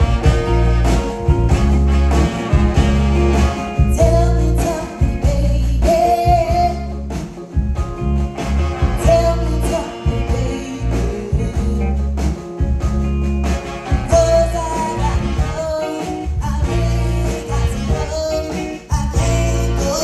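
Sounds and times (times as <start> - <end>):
drum beats: 0.0 - 19.5
guitar: 0.0 - 20.0
heavy bass line: 0.0 - 20.0
person singing: 3.8 - 7.2, 8.8 - 12.3, 14.0 - 20.0.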